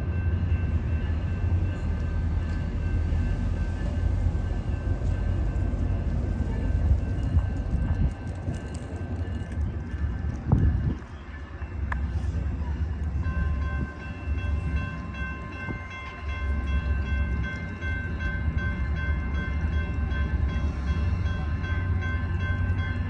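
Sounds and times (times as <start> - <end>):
diesel locomotive engine rumble: 0.0 - 23.0.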